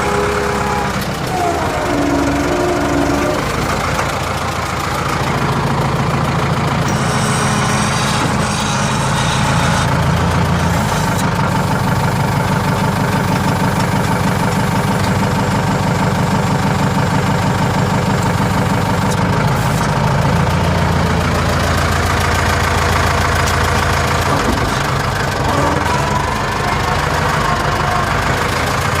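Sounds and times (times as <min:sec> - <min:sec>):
tractor diesel engine under load: 0:00.0 - 0:29.0.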